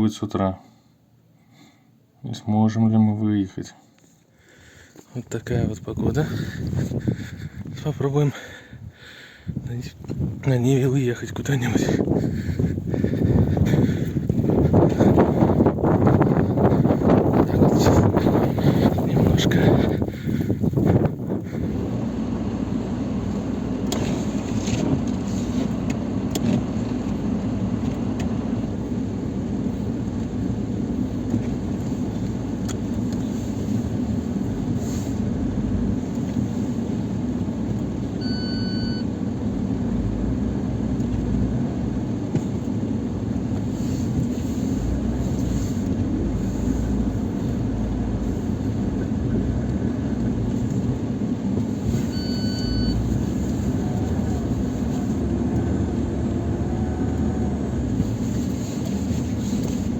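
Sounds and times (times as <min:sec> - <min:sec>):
car engine running: 0:04.9 - 0:59.9
short electronic beep: 0:38.2 - 0:39.0, 0:52.1 - 0:53.0.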